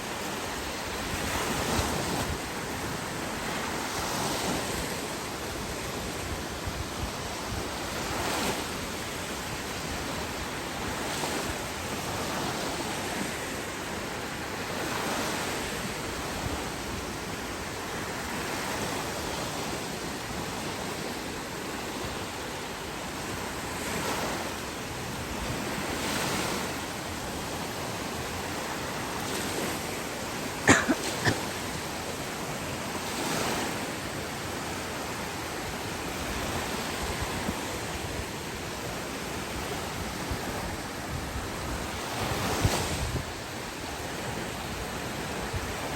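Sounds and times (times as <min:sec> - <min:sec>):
ocean surf breaking on beach: 0:00.0 - 0:45.9.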